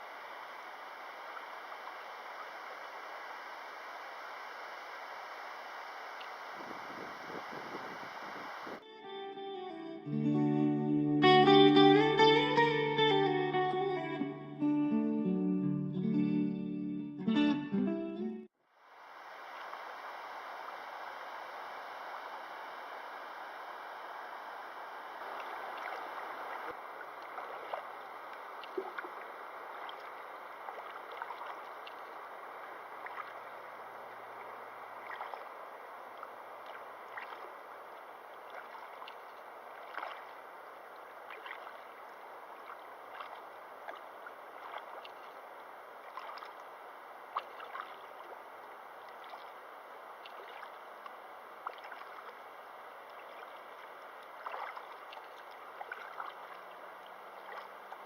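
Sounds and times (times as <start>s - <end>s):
river water rushing: 0.0s - 8.8s, 18.8s - 58.0s
small splashes and drips: 25.3s - 58.0s.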